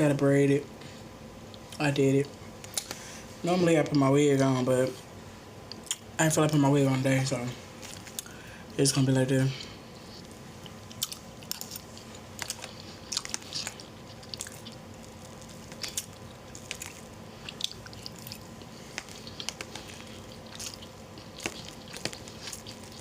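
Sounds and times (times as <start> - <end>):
faint steady hum: 0.0 - 23.0
chewing clicks and smacks: 10.2 - 23.0.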